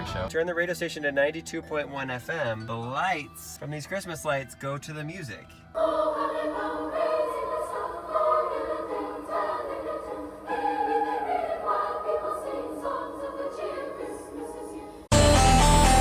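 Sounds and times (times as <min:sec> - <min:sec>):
choral singing over radio: 0:05.8 - 0:15.1
loud electronic music: 0:15.1 - 0:16.0.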